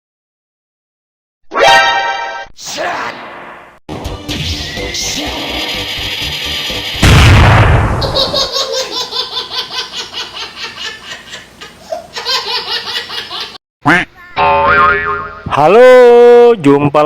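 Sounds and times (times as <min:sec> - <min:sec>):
rhythmic laughter: 0:05.3 - 0:07.0, 0:08.0 - 0:13.6
loud boom: 0:07.0 - 0:08.3.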